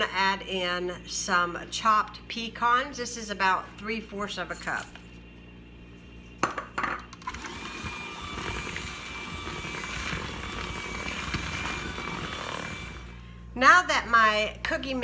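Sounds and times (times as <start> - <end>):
stand mixer motor whining: 7.2 - 13.2.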